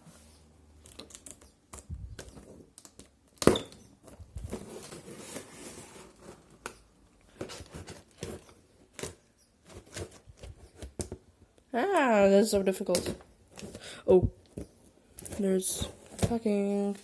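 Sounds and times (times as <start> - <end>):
cardboard and tape tearing: 2.3 - 6.7.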